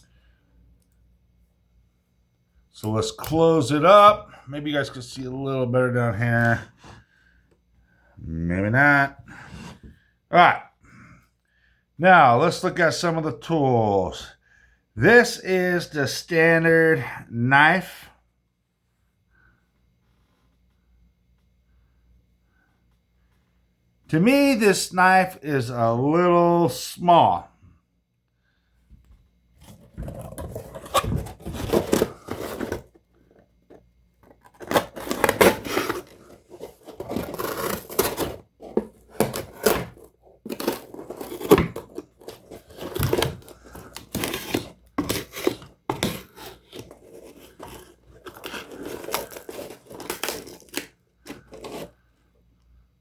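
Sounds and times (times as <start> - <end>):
knife blade tearing and scraping: 34.5 - 38.4, 39.1 - 51.9.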